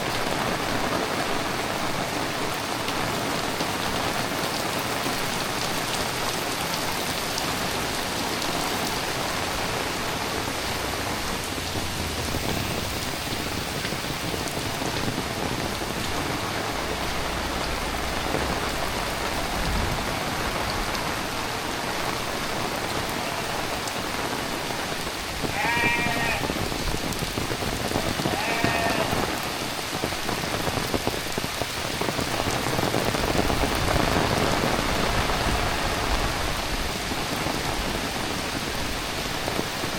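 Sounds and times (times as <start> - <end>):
heavy rain: 0.0 - 39.9
animal bleating: 25.5 - 26.5, 28.3 - 29.2.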